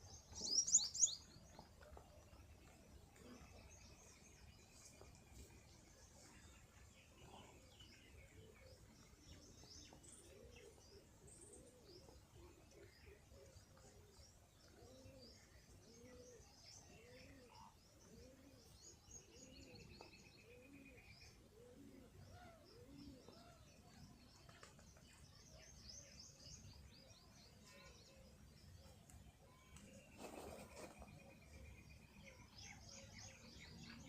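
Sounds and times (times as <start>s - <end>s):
small birds chirping and trilling: 0.0s - 34.0s
pigeons cooing: 14.7s - 16.4s, 17.0s - 23.6s.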